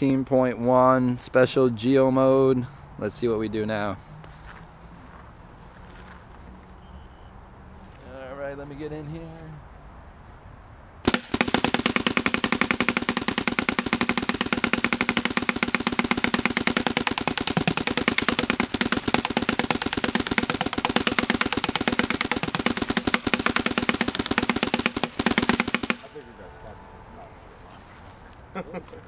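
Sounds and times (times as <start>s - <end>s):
paintball marker firing rapid pops: 11.0s - 26.1s.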